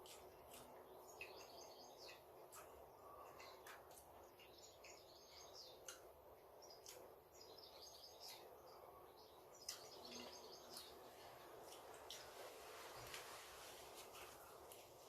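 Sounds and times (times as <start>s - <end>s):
faint bird chirping: 0.0s - 15.0s
low room noise: 0.0s - 15.0s.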